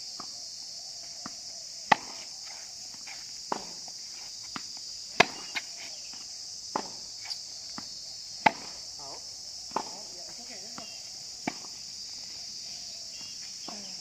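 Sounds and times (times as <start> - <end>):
high insect drone: 0.0 - 14.0
tennis ball struck by rackets: 1.2 - 3.9, 4.5 - 5.8, 6.7 - 7.0, 7.7 - 8.8, 9.6 - 11.8
tennis ball bouncing: 1.2 - 5.8, 6.7 - 7.0, 7.7 - 8.8, 9.6 - 11.8.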